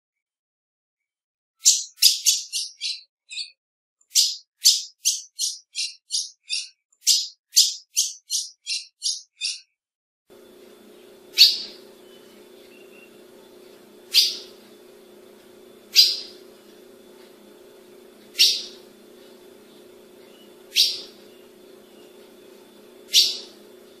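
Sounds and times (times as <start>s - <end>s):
faint low hum: 10.3s - 24.0s.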